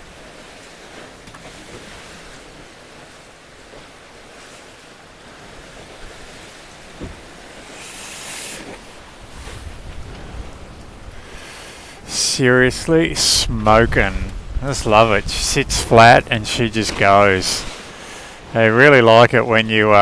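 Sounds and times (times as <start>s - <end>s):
sea water rushing: 0.0s - 20.0s
hissing water surge: 7.3s - 18.6s
wind rumbling on microphone: 8.8s - 18.6s.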